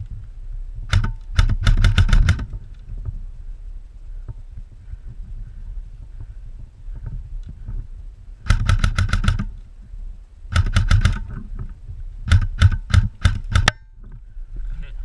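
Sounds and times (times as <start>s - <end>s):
low rumble: 0.0s - 15.0s
airsoft gun bursts: 0.9s - 2.5s, 8.4s - 9.5s, 10.5s - 11.3s, 12.2s - 13.7s.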